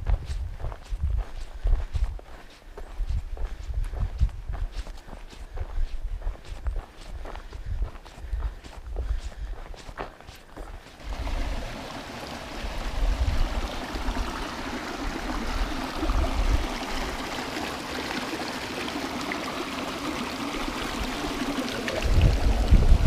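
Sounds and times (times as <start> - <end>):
stream water rushing: 10.8 - 23.0.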